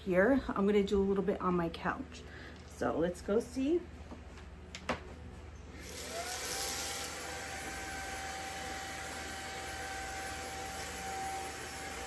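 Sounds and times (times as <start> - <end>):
handheld vacuum motor whine: 5.8 - 12.0.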